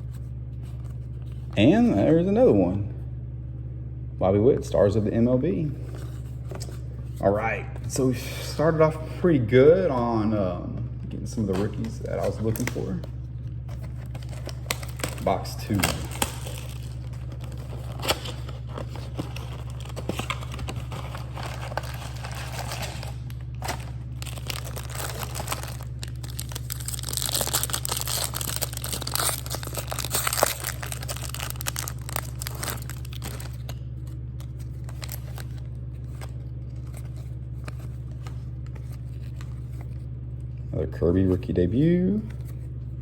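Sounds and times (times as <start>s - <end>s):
steady low hum: 0.0s - 43.0s
plastic wrapping crinkling: 11.5s - 40.1s
packaging clicks and rustles: 13.7s - 39.9s.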